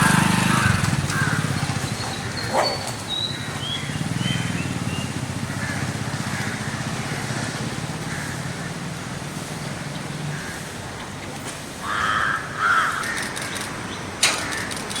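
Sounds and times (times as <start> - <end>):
vehicle engine idling: 0.0 - 11.0.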